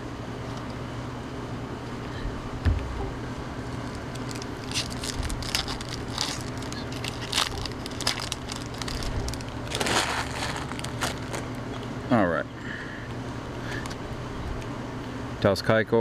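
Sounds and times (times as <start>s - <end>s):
trading cards scraping and rustling: 3.0s - 11.9s.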